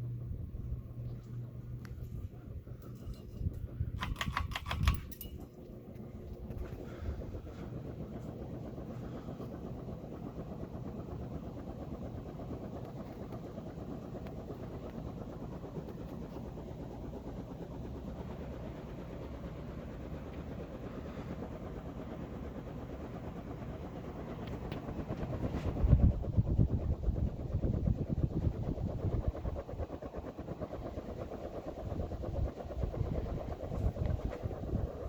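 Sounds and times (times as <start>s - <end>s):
ceiling fan running: 0.0s - 35.0s.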